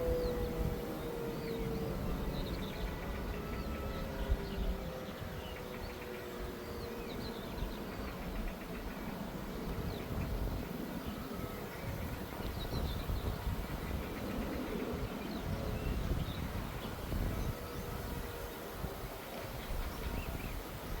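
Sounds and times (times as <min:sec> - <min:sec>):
birds chirping: 0:00.0 - 0:21.0
distant sirens holding low tone: 0:00.0 - 0:21.0
outdoor background rumble: 0:00.0 - 0:21.0.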